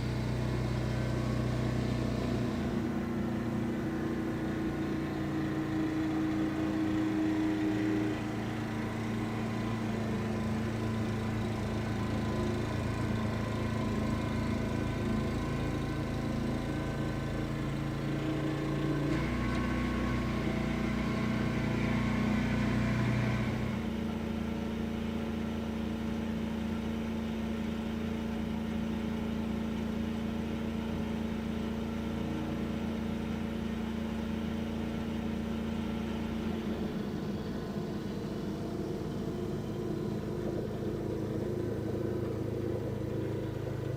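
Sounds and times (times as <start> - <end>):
snow blower engine running: 0.0 - 43.9.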